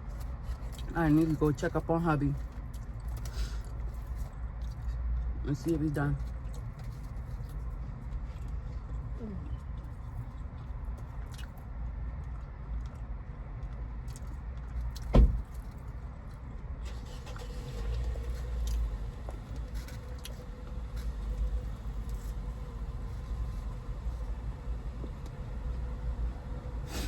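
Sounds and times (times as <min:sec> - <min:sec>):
sharp thump: 0:15.1 - 0:15.4.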